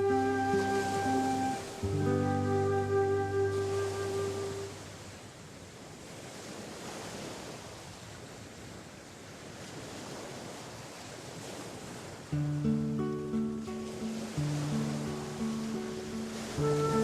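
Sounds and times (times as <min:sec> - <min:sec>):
music: 0:00.0 - 0:04.7, 0:12.4 - 0:17.0
sea waves washing on shore: 0:00.0 - 0:17.0.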